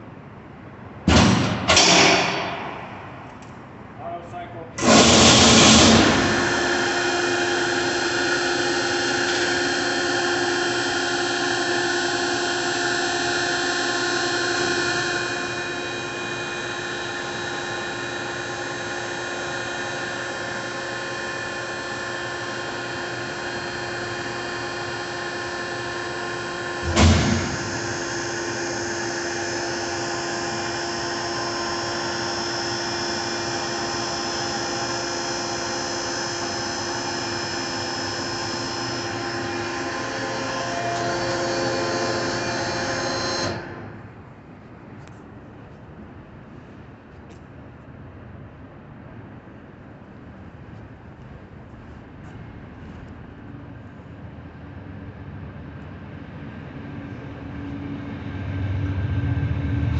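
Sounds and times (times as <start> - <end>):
baler motor and pump whine: 0.0 - 46.9, 48.3 - 59.9
loud clunk: 1.0 - 3.4, 26.8 - 28.0.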